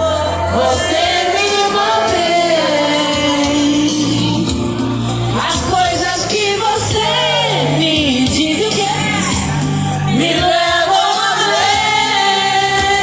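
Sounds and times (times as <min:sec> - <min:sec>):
sustained bass notes: 0:00.0 - 0:13.0
voices singing a melody: 0:00.0 - 0:13.0
shouts: 0:06.8 - 0:12.4.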